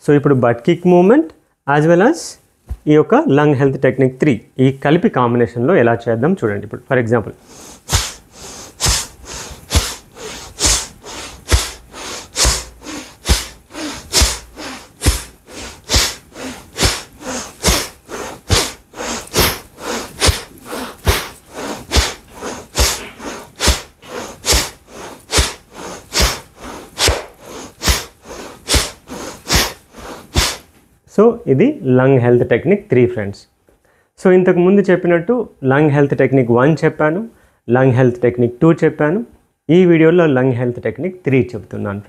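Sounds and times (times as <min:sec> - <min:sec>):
person exhaling sharply: 0:07.4 - 0:30.7.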